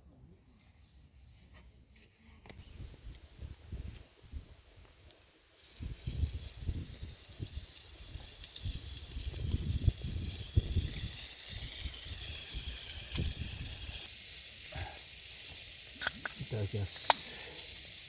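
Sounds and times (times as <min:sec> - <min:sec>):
meat sizzling in a pan: 0:05.6 - 0:18.0.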